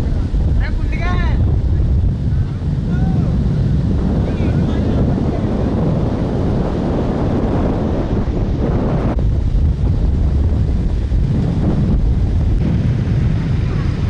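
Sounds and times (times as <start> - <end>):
wind buffeting microphone: 0.0 - 14.0
floodwater rushing: 12.6 - 14.0.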